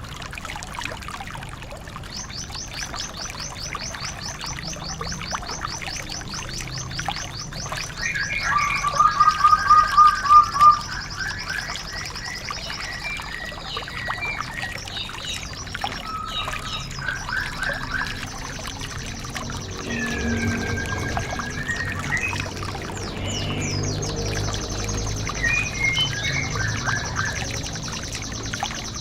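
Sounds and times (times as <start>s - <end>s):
bird fast high trill: 19.3s - 24.2s.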